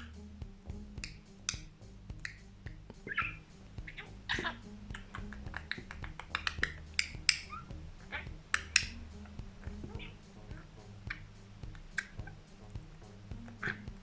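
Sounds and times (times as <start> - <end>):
budgerigar chattering: 2.2 - 12.5, 13.4 - 14.0.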